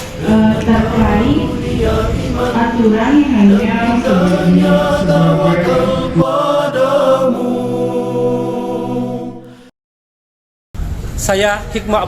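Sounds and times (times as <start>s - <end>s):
chant-like devotional vocal music: 0.0s - 9.7s
person speaking: 2.6s - 6.4s.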